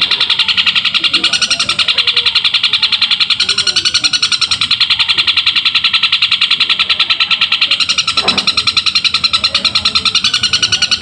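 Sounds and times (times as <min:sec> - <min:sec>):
shrike harsh rapid chirps: 0:00.0 - 0:11.0.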